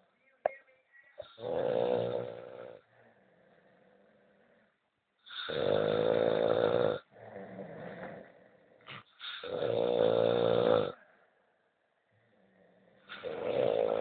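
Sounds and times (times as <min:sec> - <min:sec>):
man snoring: 0:01.2 - 0:02.9, 0:05.3 - 0:08.6, 0:09.2 - 0:11.0, 0:13.1 - 0:14.0
quiet breath: 0:02.1 - 0:05.7, 0:10.8 - 0:14.0.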